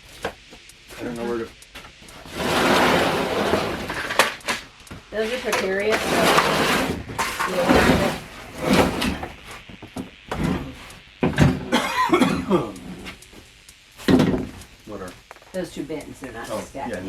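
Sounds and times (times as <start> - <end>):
indistinct voices: 2.3 - 9.3
person coughing: 11.7 - 12.7
knocks and rustles of items: 14.0 - 14.6.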